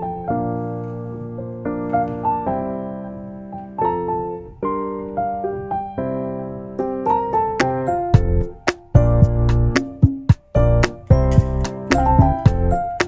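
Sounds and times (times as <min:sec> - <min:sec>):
gentle piano melody: 0:00.0 - 0:13.0.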